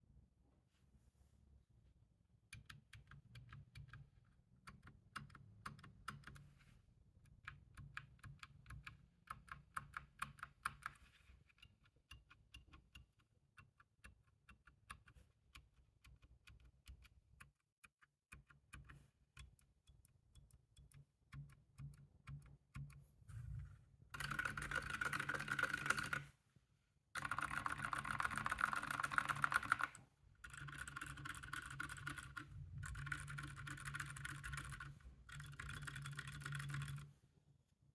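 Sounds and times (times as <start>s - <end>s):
mechanical keyboard typing: 24.2s - 26.3s, 27.2s - 37.1s.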